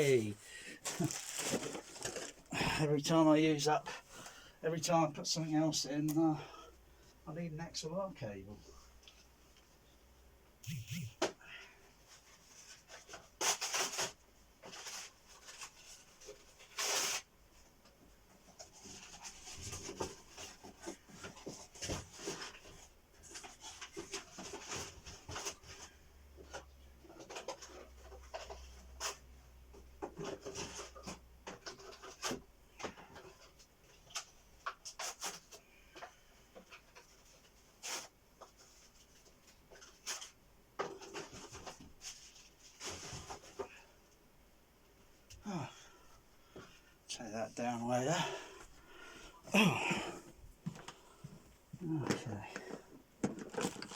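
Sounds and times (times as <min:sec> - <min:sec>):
cables rubbing and rustling: 0:00.0 - 0:03.2, 0:50.3 - 0:53.9.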